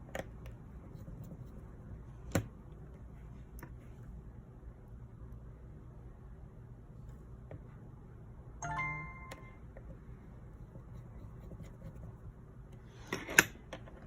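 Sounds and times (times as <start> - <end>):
electronic chime: 8.6 - 9.6.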